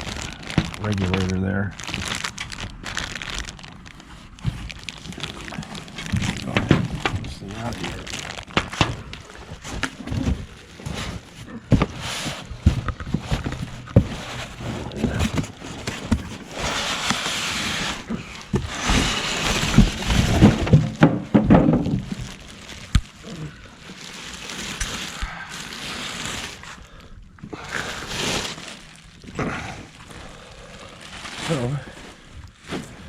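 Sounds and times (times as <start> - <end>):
packing rustling and scraping: 0.0 - 33.0
cardboard box knocks and thumps: 9.6 - 22.3.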